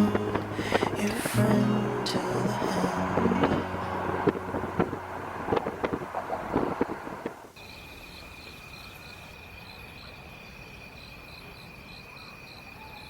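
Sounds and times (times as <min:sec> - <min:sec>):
insect pulsing chirp: 0:05.5 - 0:13.0
insects trilling: 0:06.2 - 0:13.0.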